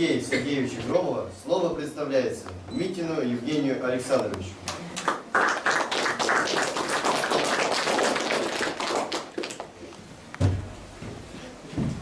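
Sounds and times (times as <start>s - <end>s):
audience applauding: 5.0s - 9.7s
thump: 10.4s - 10.7s.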